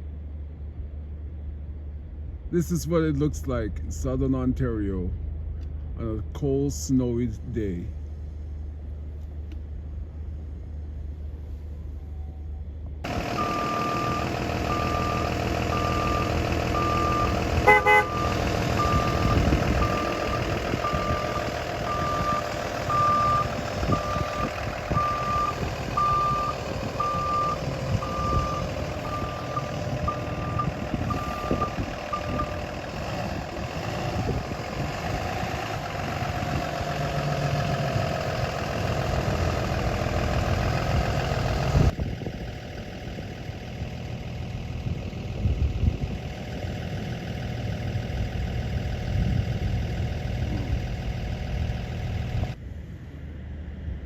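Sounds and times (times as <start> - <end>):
traffic rumble: 0.0 - 54.0
reversing alarm beeping: 13.1 - 32.8
vehicle horn toot: 17.6 - 18.4.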